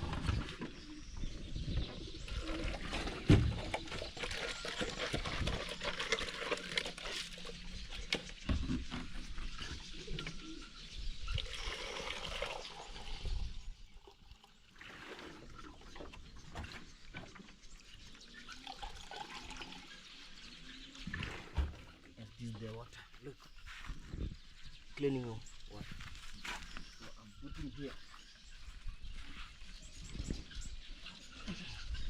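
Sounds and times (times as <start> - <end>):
water pouring into a container: 2.2 - 8.0, 11.3 - 16.0, 17.6 - 21.4.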